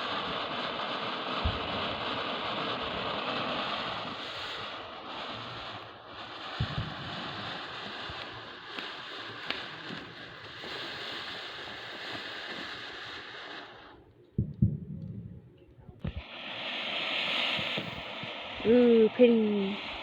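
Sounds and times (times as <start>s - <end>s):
firework fountain hissing: 0.0s - 15.1s, 16.0s - 20.0s
low thuds: 14.4s - 16.2s.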